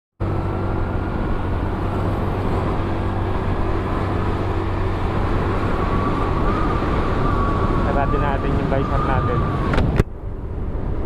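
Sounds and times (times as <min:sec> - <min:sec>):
road noise: 0:00.2 - 0:11.0.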